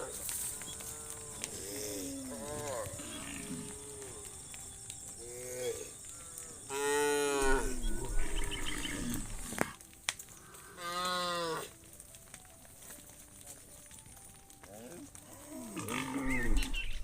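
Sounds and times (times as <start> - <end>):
cows mooing: 0.0 - 4.4, 5.7 - 9.8, 14.7 - 16.8.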